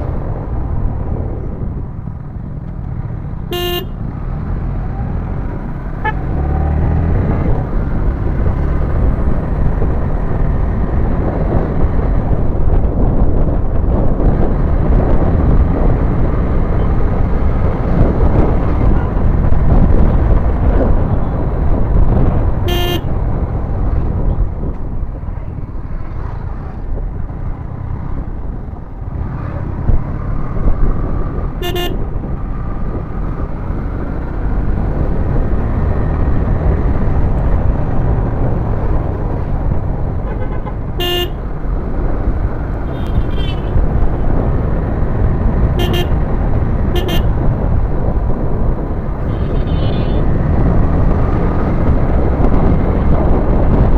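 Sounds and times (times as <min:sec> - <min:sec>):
wind noise while riding: 0:00.0 - 0:53.9
motorcycle engine: 0:00.1 - 0:13.0
horn toots: 0:03.5 - 0:04.0, 0:06.0 - 0:06.4, 0:22.6 - 0:23.1, 0:31.6 - 0:32.1, 0:40.2 - 0:41.4, 0:42.9 - 0:43.8, 0:45.8 - 0:46.2, 0:46.9 - 0:47.3.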